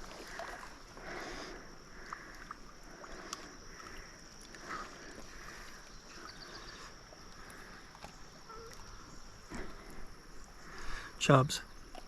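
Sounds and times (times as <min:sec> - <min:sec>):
high insect drone: 0:00.0 - 0:12.0
water lapping: 0:00.0 - 0:12.0
faint clicks: 0:03.2 - 0:04.6.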